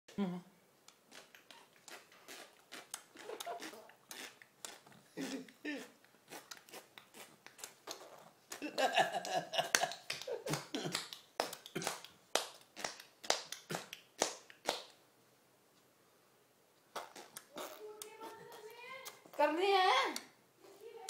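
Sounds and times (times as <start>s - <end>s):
baby smacking its lips: 0.9s - 8.6s, 9.2s - 15.0s, 16.9s - 19.5s.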